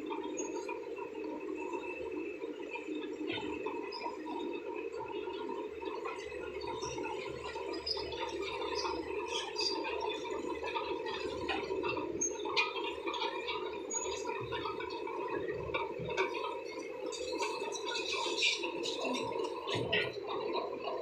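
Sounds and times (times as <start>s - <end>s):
bulldozer diesel engines running: 6.1s - 21.0s.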